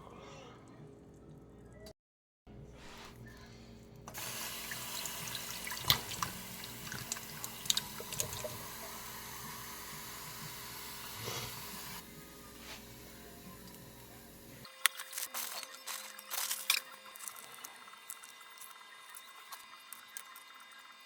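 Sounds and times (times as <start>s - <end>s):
tap water running into sink: 4.1s - 12.0s.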